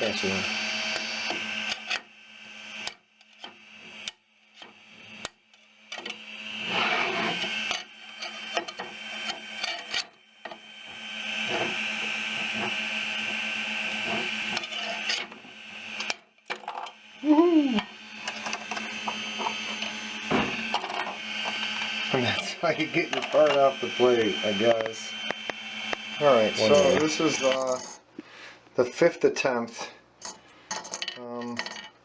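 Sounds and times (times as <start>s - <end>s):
spatula scraping plate: 6.6s - 7.6s.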